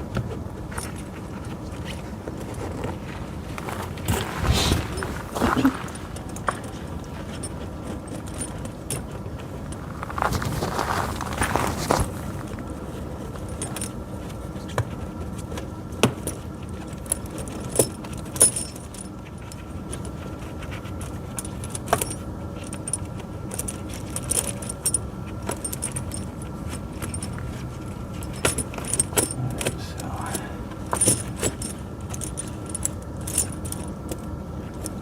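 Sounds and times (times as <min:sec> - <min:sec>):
steady low hum: 0:00.0 - 0:35.0
chain links clinking: 0:21.4 - 0:27.4, 0:28.1 - 0:34.0.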